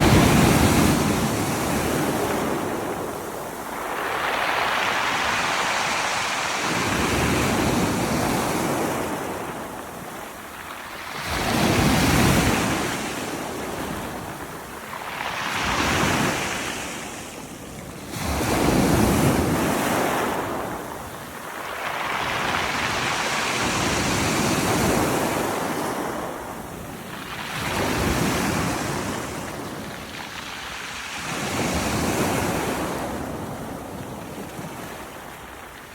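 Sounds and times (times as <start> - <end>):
waves breaking on pebbles: 0.0 - 17.1.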